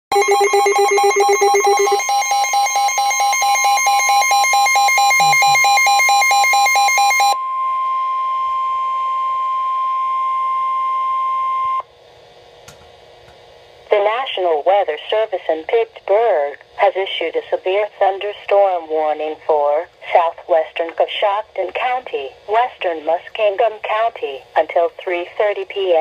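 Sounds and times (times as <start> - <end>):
pulsing electronic alarm: 0.1 - 11.8
steady warning tone: 0.1 - 11.8
faint radio hiss: 13.6 - 26.0.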